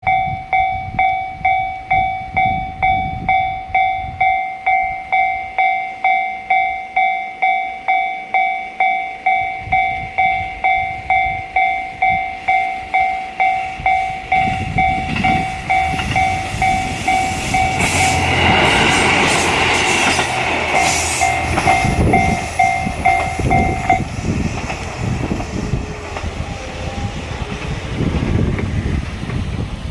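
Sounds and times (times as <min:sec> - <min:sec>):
level crossing bell: 0:00.0 - 0:18.8, 0:20.7 - 0:24.1
diesel railcar passing: 0:00.0 - 0:29.9.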